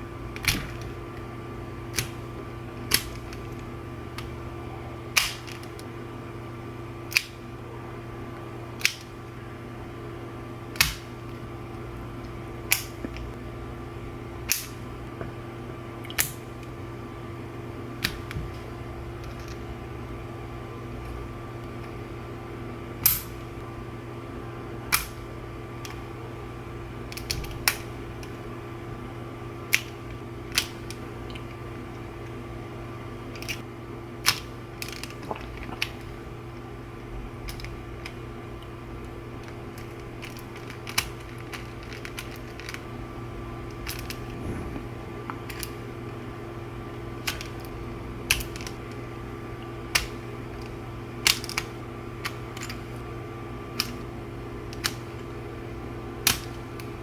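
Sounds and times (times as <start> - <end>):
steady low hum: 0.0 - 57.0
plastic parts clicking together: 5.2 - 5.9, 8.8 - 9.1, 33.3 - 33.6, 37.4 - 42.8, 43.7 - 44.3, 49.9 - 52.8, 53.8 - 54.0.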